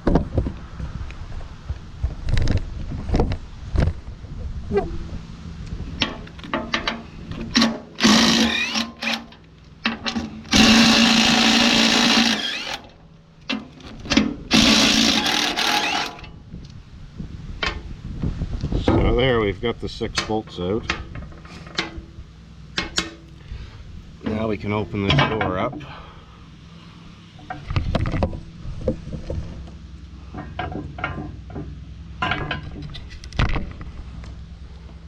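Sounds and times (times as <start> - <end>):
power tool spinning bolts: 6.0 - 16.4.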